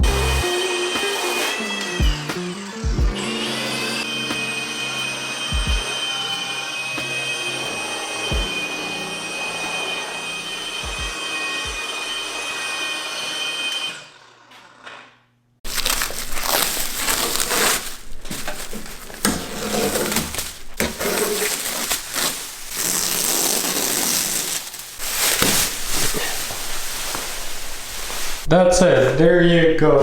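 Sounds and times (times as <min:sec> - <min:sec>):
car polisher whining: 0:00.0 - 0:14.9.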